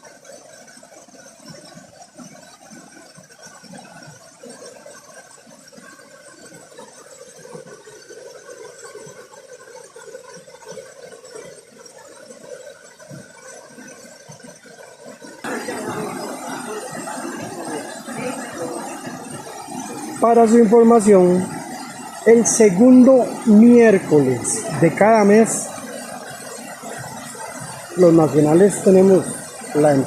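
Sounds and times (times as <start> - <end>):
stream water rushing: 0.0 - 30.0.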